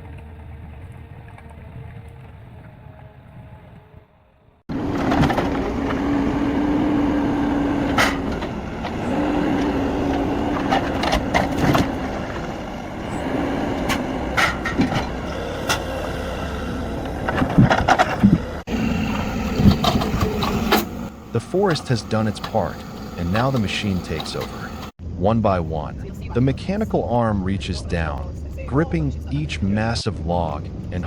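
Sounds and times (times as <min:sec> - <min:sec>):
heavy machine engine running: 0:04.7 - 0:25.0
logs knocking and clunking: 0:07.8 - 0:12.8.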